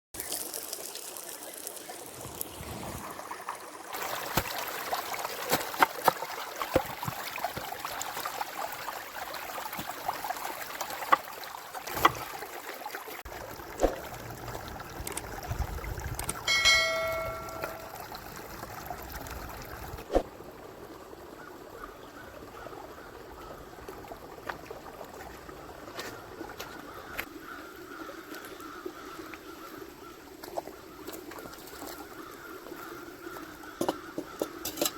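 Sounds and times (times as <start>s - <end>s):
river flowing: 0.9s - 21.7s
bell-like metallic ring: 16.5s - 18.0s.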